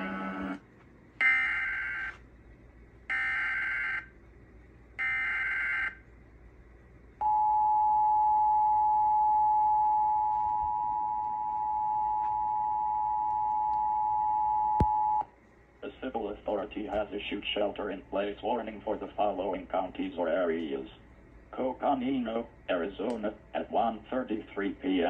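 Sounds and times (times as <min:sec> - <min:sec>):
steady two-tone attention signal: 0:00.0 - 0:00.6.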